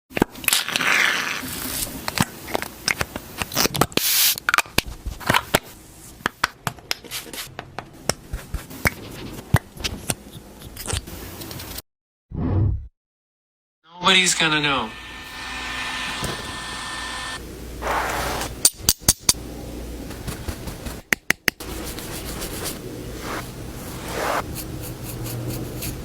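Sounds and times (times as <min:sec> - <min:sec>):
brushing or spraying swishes: 0:17.8 - 0:18.6, 0:21.6 - 0:26.0.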